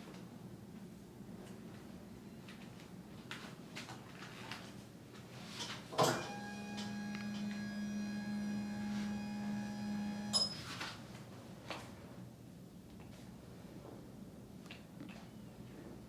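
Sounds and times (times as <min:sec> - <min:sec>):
small electric motor humming: 0:06.2 - 0:10.4.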